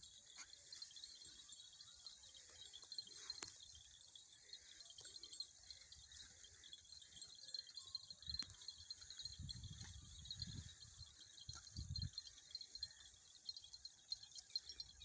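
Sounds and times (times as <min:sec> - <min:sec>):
insects chirring: 0:00.0 - 0:15.0
faint clicks: 0:08.2 - 0:10.4.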